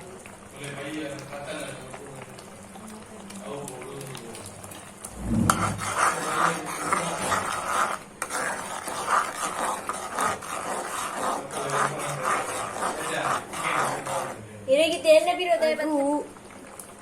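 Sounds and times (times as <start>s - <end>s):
chicken being mixed in bowl: 0.6s - 14.4s.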